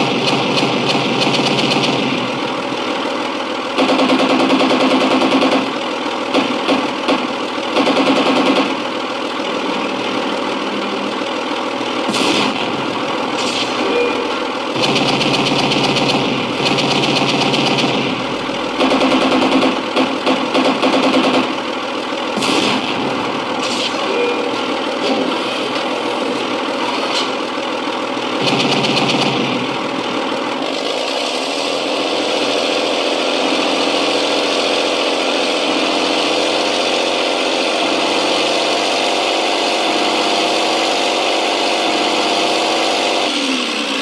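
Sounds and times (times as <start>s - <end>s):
simulated tank engine revving: 0.0s - 44.0s.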